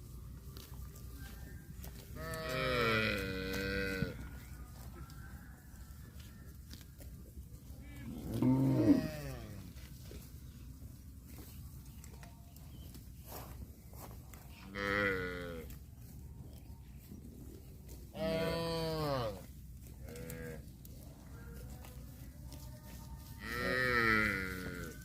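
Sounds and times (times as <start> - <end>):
cattle mooing: 7.8 - 9.6, 18.2 - 19.4.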